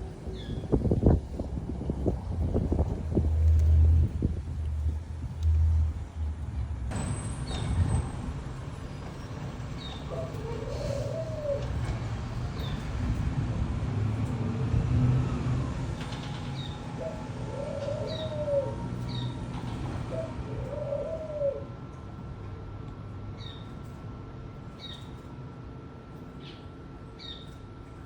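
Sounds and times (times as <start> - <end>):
steady low rumble: 0.0 - 8.8
low rising and falling bird call: 16.6 - 19.4.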